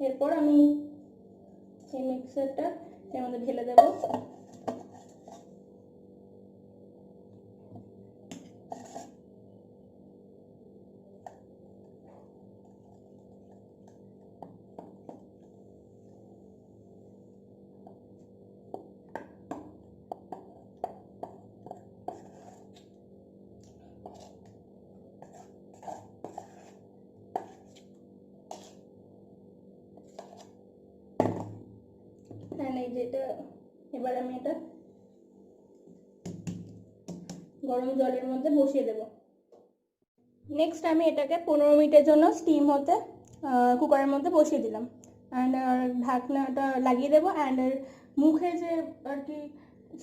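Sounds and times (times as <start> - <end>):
faint steady hum: 0.0 - 39.0.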